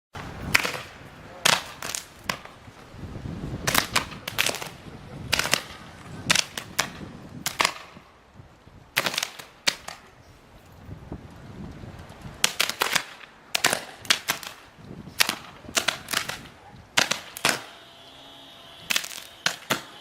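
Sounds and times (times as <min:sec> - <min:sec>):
electrical arcing cracks: 0:00.2 - 0:02.6, 0:03.6 - 0:08.0, 0:09.0 - 0:10.1, 0:11.6 - 0:17.9, 0:18.8 - 0:20.0.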